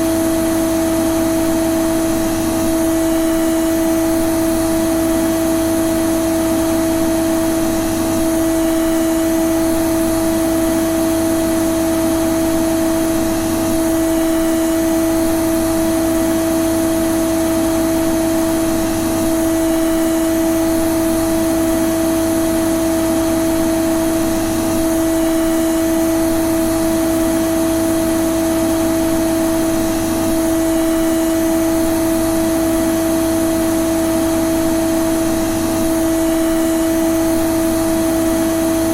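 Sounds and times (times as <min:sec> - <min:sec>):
vacuum cleaner motor running: 0:00.0 - 0:38.9.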